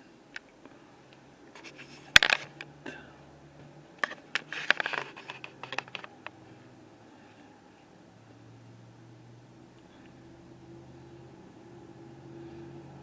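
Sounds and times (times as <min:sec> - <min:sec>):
small clicks and rattles: 0:04.0 - 0:06.4.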